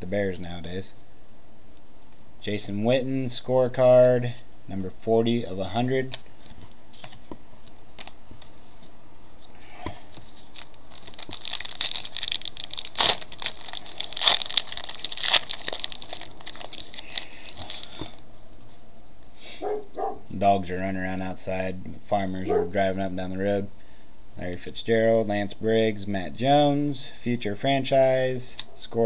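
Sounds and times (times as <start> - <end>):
foil wrapper crinkling and tearing: 9.9 - 18.2.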